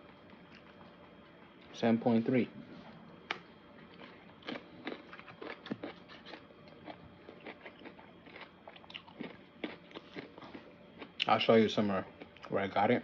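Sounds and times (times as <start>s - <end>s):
person chewing food: 3.2s - 11.3s.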